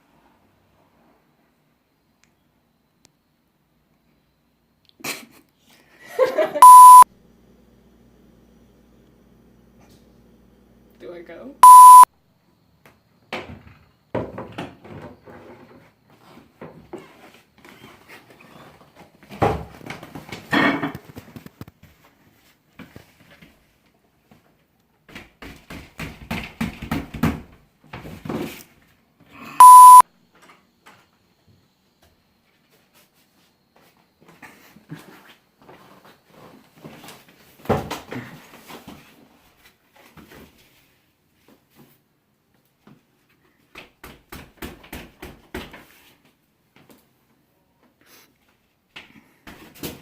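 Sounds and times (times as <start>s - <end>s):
loud electronic beep: 6.6s - 7.0s, 11.6s - 12.1s, 29.6s - 30.0s.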